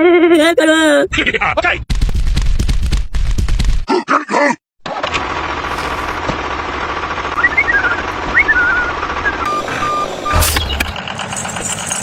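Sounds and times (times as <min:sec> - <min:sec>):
vehicle engine running: 0:04.9 - 0:12.0
bird chirps: 0:07.4 - 0:11.6.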